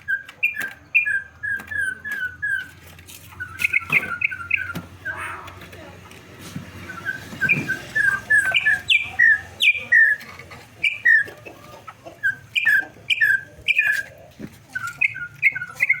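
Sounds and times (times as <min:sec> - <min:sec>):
bird singing whistled notes: 0:00.0 - 0:02.8, 0:03.4 - 0:05.2, 0:06.9 - 0:10.2, 0:14.7 - 0:16.0.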